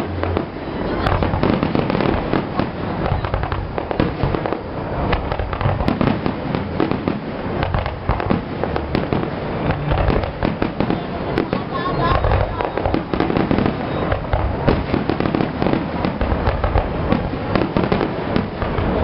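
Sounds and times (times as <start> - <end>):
fireworks bangs and crackles: 0.0 - 19.0.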